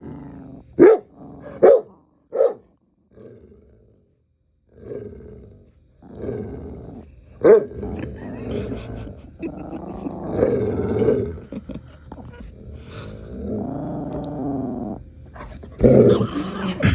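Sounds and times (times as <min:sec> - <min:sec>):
dogs growling: 0:00.0 - 0:16.9
dogs barking: 0:00.7 - 0:02.7, 0:07.4 - 0:08.6.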